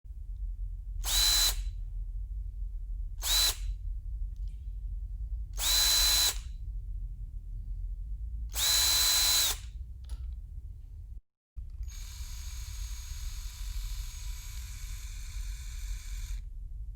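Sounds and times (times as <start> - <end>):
constant low hum: 0.1 - 16.9
electric drill whining: 1.0 - 1.7, 3.2 - 3.7, 5.6 - 6.5, 8.5 - 9.7, 11.8 - 16.4.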